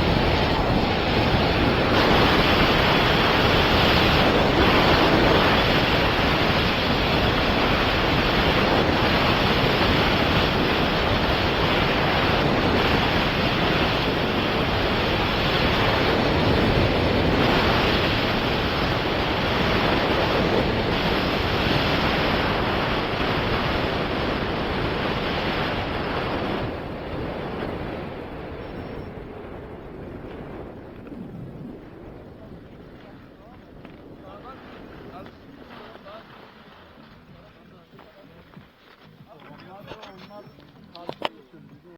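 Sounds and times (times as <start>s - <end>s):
wind rushing over microphone: 0.0s - 41.2s.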